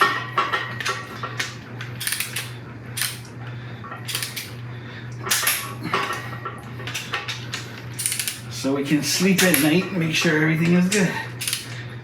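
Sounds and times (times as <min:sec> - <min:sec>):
steady low hum: 0:00.0 - 0:12.0
torque wrench clicking: 0:08.0 - 0:08.4, 0:11.4 - 0:11.8.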